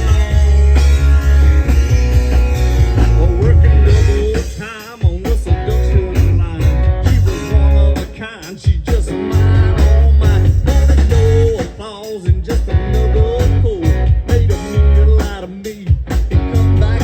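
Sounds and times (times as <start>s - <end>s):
lead guitar bending notes: 0.0s - 4.6s
bass: 0.0s - 17.0s
drums: 0.0s - 17.0s.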